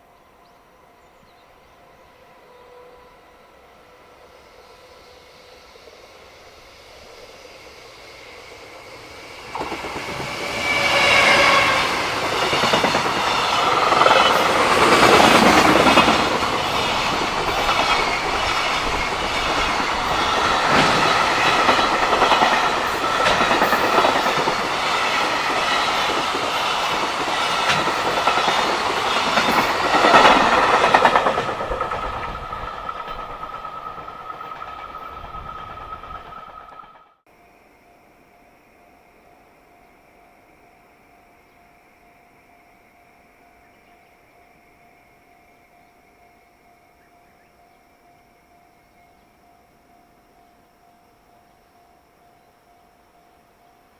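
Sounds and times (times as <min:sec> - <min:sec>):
freight train passing: 0:00.0 - 0:53.9
clattering train wheels: 0:07.7 - 0:37.2.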